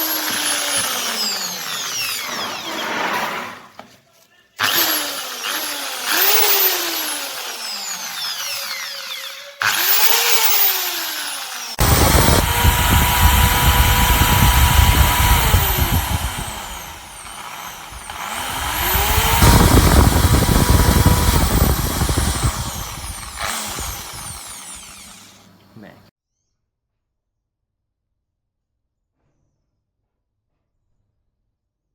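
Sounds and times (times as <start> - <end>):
electric impact drill running: 0.0 - 2.8, 4.6 - 26.0.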